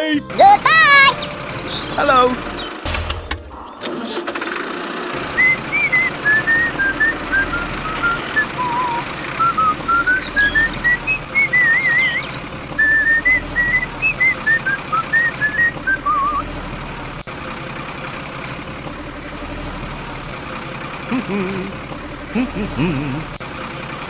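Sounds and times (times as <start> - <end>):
low engine-like hum: 5.2 - 24.0
person whistling: 5.4 - 12.2, 12.8 - 16.4.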